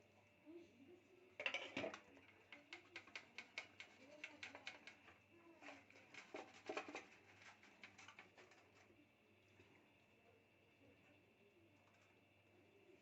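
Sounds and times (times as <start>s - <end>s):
kitchenware clicking and tapping: 1.4s - 8.6s.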